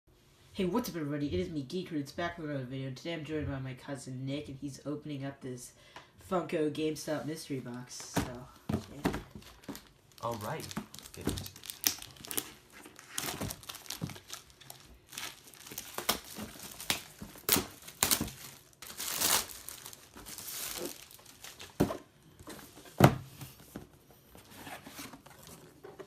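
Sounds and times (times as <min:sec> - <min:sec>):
packing paper crumpling and tearing: 0:09.4 - 0:21.8.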